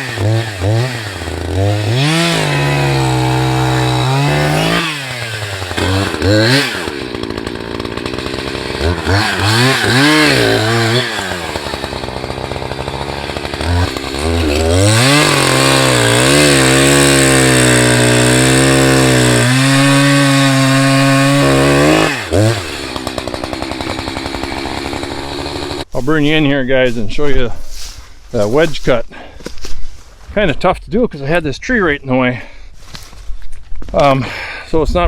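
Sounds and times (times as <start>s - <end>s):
chainsaw cutting wood: 0.0s - 25.9s.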